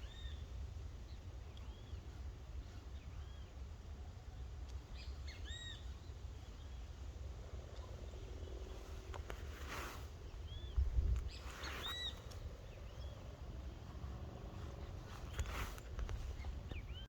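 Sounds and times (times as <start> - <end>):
birds chirping: 0.0 - 17.0
steady low rumble: 0.0 - 17.0
hissy swishes: 7.5 - 17.0.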